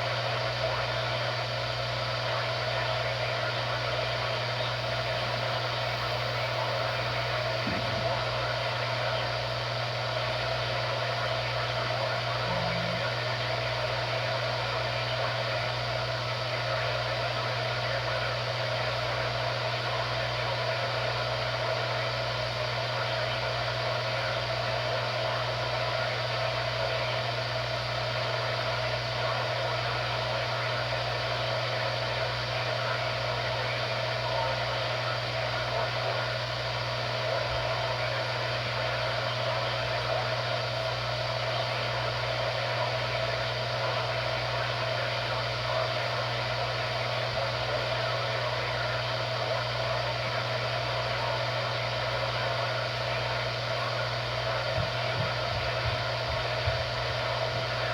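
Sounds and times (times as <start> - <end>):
radio static hiss: 0.0 - 57.9
low steady hum: 2.3 - 14.4.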